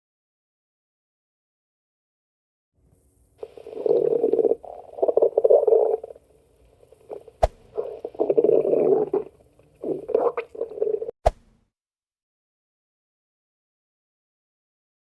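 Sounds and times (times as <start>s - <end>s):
stomach growling: 3.4s - 11.2s.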